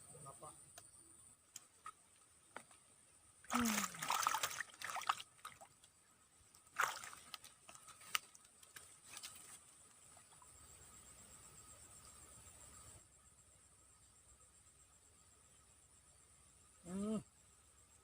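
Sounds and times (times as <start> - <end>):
water splashing and sloshing: 3.4 - 5.9, 6.5 - 10.5
water dripping: 3.5 - 5.9.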